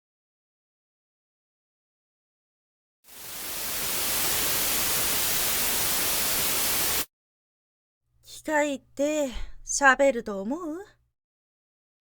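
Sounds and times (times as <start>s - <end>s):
white-noise hiss: 3.1s - 7.1s.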